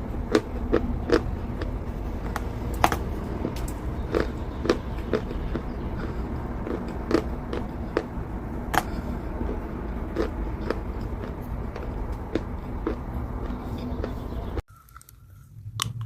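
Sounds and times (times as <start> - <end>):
low background hum: 0.0 - 16.0
chalk crunching while chewed: 0.3 - 15.9.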